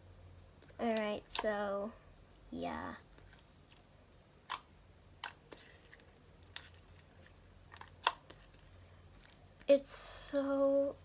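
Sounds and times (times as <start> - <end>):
slime clicking and popping: 7.8 - 8.4.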